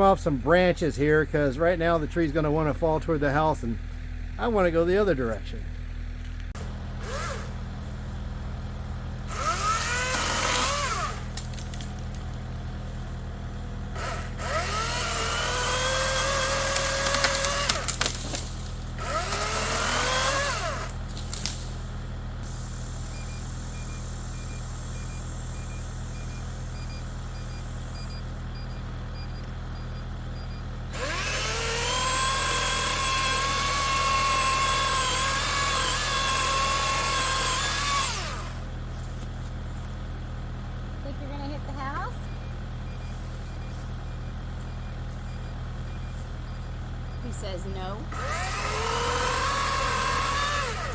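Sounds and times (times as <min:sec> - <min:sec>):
chainsaw idling and revving: 0:06.6 - 0:23.2, 0:30.9 - 0:38.8, 0:46.1 - 0:50.9.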